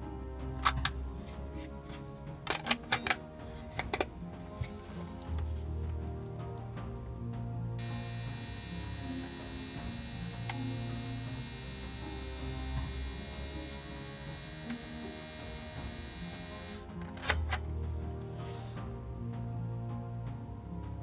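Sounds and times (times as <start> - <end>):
electric motor humming and whining: 7.8 - 18.8.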